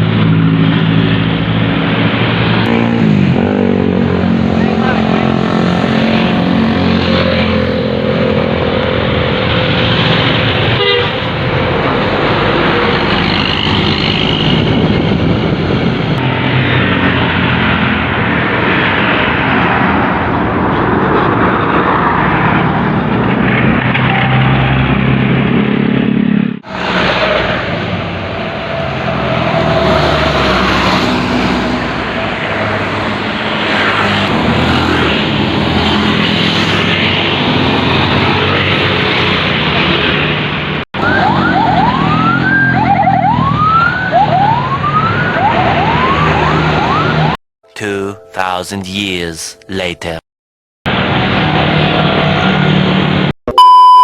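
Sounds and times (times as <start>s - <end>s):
bus engine and road noise: 0.0s - 50.2s, 50.9s - 54.0s
multi-tone musical bus horn: 10.7s - 11.4s.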